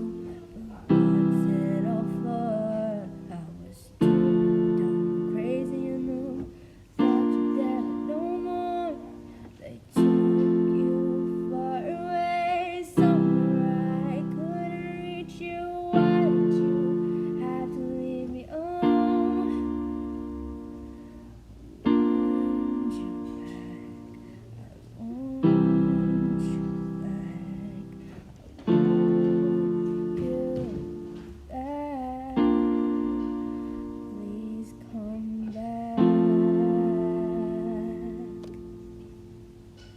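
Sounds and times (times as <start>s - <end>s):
woman singing: 0.0s - 20.7s, 21.8s - 38.7s
piano chords: 0.0s - 39.9s.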